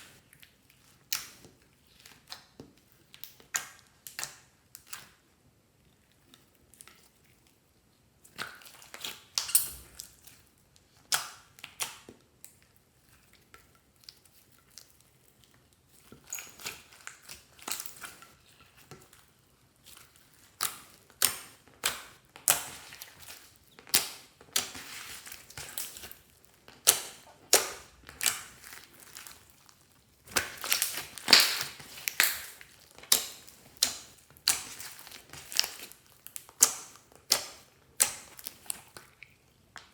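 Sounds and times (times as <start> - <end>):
slime squeezed with sticky pops: 8.3 - 10.2, 20.4 - 39.9.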